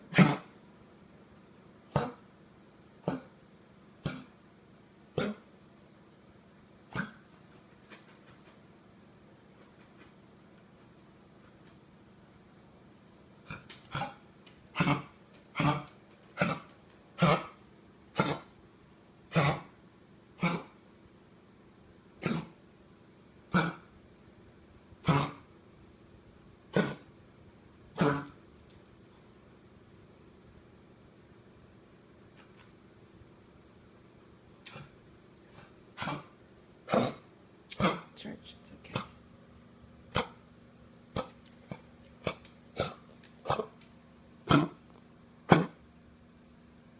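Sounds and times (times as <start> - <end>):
dog coughing: 0.1 - 0.6, 1.9 - 2.3, 3.0 - 3.4, 4.0 - 4.4, 5.2 - 5.5, 6.9 - 7.3, 13.4 - 18.5, 19.3 - 19.8, 20.4 - 20.8, 22.2 - 22.6, 23.5 - 23.9, 25.0 - 25.5, 26.7 - 27.1, 27.9 - 28.4, 34.6 - 35.0, 35.6 - 38.1, 40.1 - 40.4, 41.1 - 43.7, 44.4 - 44.8, 45.5 - 45.8
person coughing: 14.8 - 16.6, 19.3 - 19.7, 22.2 - 22.6, 25.0 - 25.4, 26.7 - 27.0.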